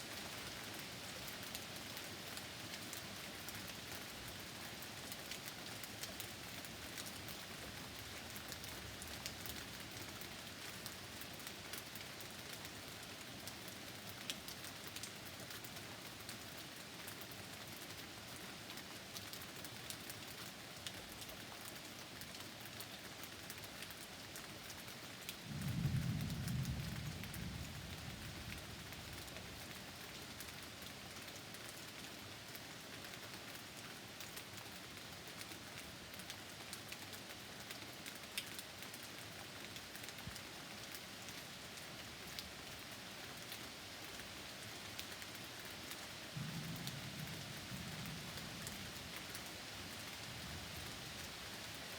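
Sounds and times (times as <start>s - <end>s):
steady rain falling: 0.0s - 51.9s
low thunder rumble: 25.5s - 28.9s, 46.4s - 49.3s.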